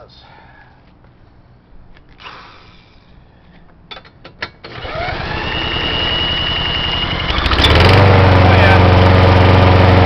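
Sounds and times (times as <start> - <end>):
mower engine cranking: 4.6 - 10.0
power drill whining: 4.7 - 7.8.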